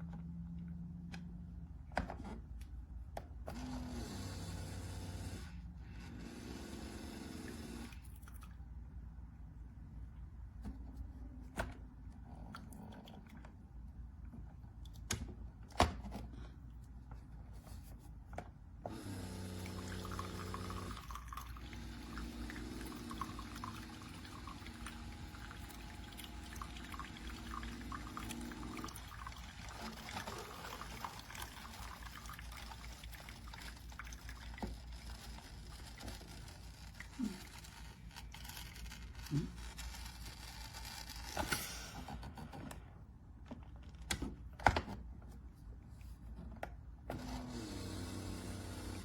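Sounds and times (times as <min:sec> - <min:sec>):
liquid pouring and trickling: 0:19.6 - 0:38.0.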